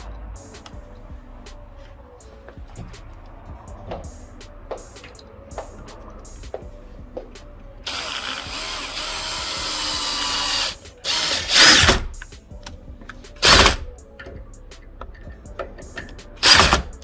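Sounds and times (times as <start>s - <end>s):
power drill running: 7.9s - 12.0s, 13.4s - 13.8s, 16.4s - 16.9s.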